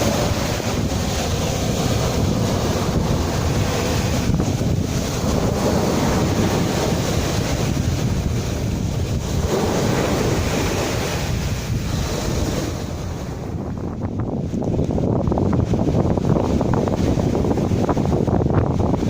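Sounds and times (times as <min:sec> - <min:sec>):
sea waves washing: 0:00.0 - 0:19.0
wind buffeting microphone: 0:00.0 - 0:19.0.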